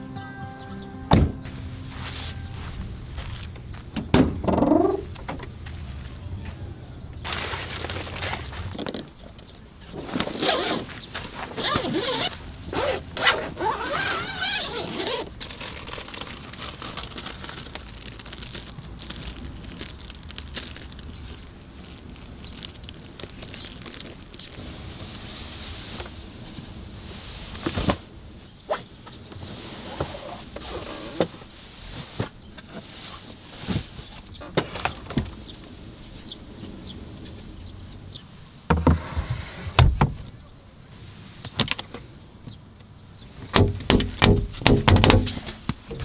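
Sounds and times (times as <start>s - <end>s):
music: 0.0s - 4.0s
heavy thumps: 1.1s - 9.2s, 43.6s - 45.5s.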